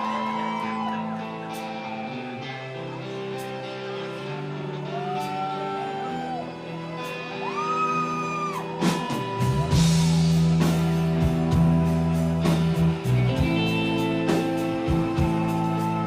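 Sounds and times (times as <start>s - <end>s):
bass guitar: 0.0s - 16.0s
drums: 0.0s - 16.0s
electric guitars playing: 0.0s - 16.0s.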